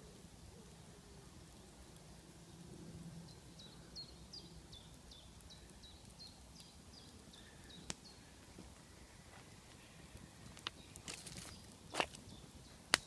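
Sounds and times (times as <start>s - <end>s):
small bird chirping: 3.2s - 8.3s.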